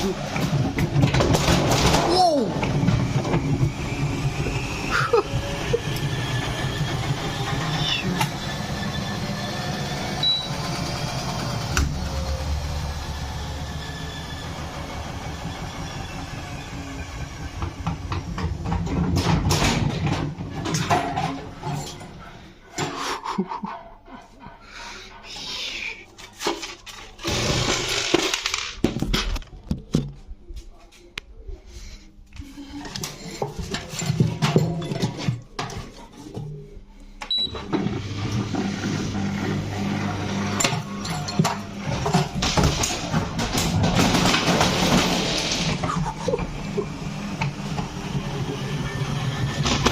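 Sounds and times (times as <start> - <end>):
knocks and rattles: 0.3 - 3.8, 17.1 - 22.1, 32.9 - 36.5, 40.6 - 46.6.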